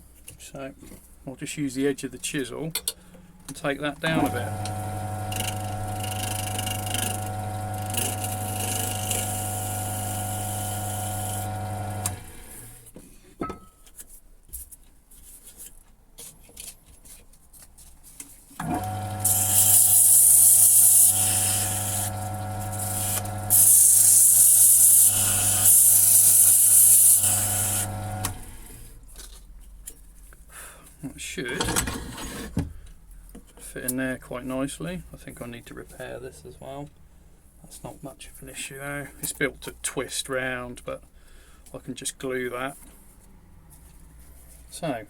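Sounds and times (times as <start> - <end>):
lathe motor humming: 4.2 - 12.5, 18.6 - 26.1, 27.2 - 28.6
chisel scraping with high hissing: 7.9 - 11.4, 19.2 - 22.2, 22.8 - 27.9.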